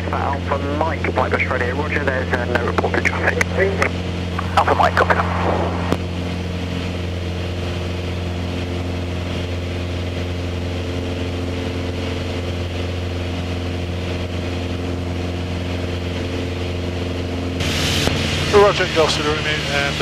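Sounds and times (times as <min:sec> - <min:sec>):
light aircraft engine drone: 0:00.0 - 0:20.0.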